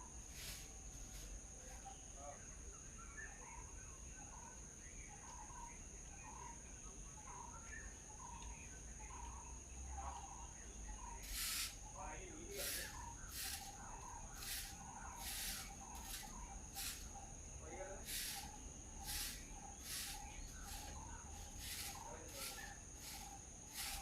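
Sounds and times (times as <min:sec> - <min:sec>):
bird calling: 0:10.2 - 0:24.0
high-pitched insect drone: 0:11.1 - 0:24.0
brief hiss: 0:11.3 - 0:11.8.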